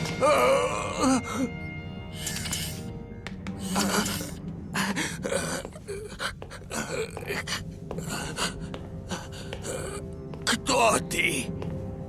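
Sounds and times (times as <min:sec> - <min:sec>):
person gasping and panting: 0:03.6 - 0:10.0.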